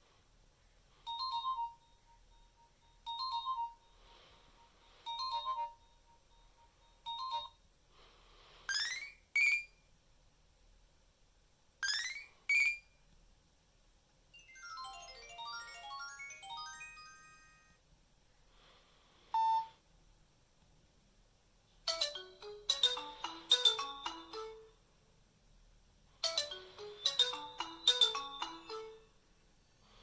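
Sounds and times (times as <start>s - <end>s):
mobile phone short beeps: 19.4s - 19.7s.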